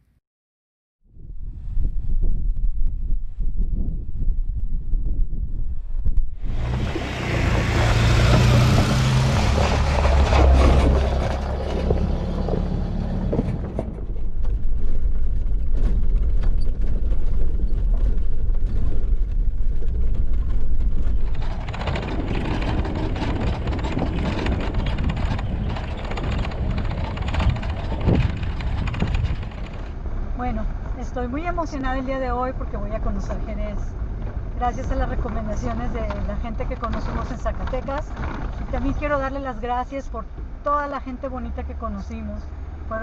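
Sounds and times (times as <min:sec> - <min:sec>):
engine and road rumble: 0:01.2 - 0:43.0
rushing noise: 0:05.9 - 0:31.0.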